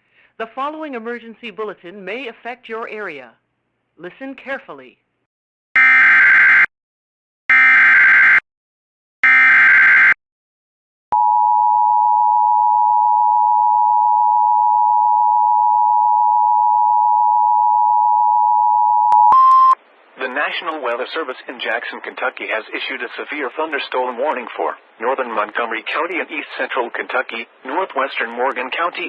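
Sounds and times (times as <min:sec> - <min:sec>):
two-tone attention signal: 0:11.2 - 0:19.8.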